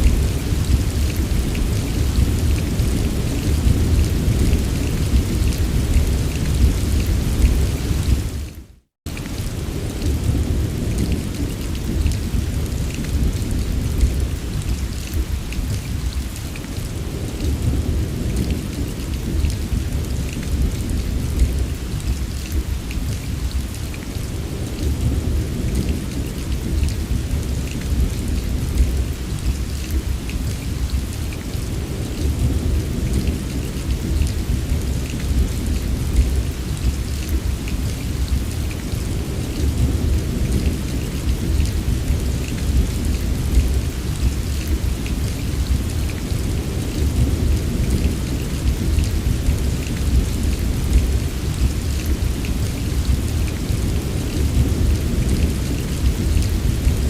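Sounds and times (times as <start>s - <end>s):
low rumble of thunder: 0.0s - 8.4s, 9.2s - 57.0s
heavy rain: 0.0s - 57.0s.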